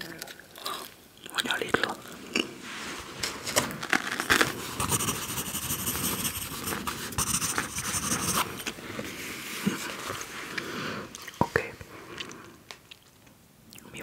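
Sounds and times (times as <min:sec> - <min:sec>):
close scratching and scraping: 0:03.9 - 0:10.5.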